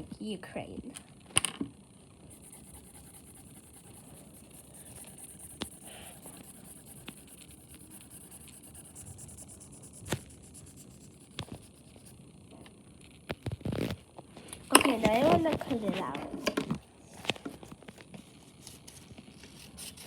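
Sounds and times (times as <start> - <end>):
marker scratching on paper: 2.3 - 12.2.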